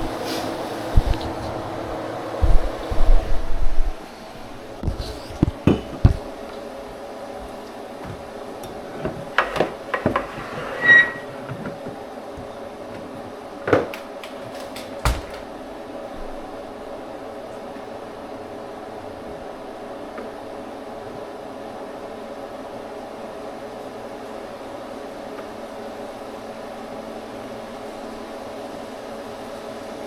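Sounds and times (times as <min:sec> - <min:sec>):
objects knocking and clattering: 0:04.8 - 0:06.6, 0:08.0 - 0:15.6.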